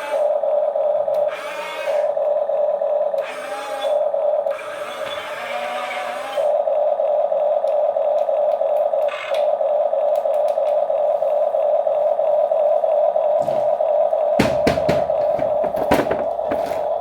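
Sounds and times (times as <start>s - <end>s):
small electric motor whine: 0.0s - 0.4s, 1.1s - 2.4s, 3.2s - 7.8s, 9.0s - 14.2s.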